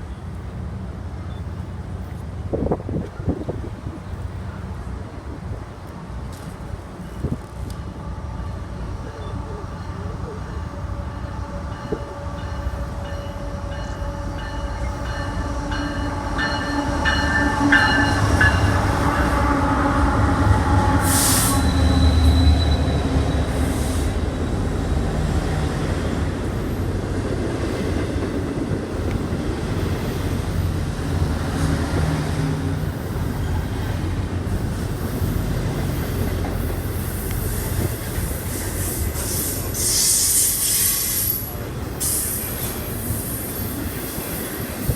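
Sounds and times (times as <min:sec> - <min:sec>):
train engine drone: 0:00.0 - 0:44.9
train wheels rumbling on rails: 0:00.0 - 0:44.9.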